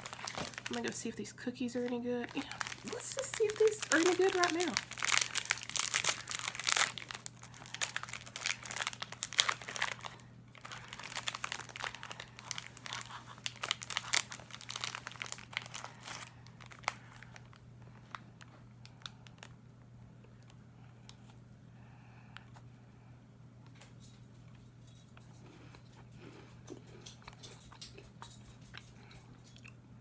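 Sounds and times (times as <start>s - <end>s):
plastic wrapper crinkling: 0.0s - 19.6s.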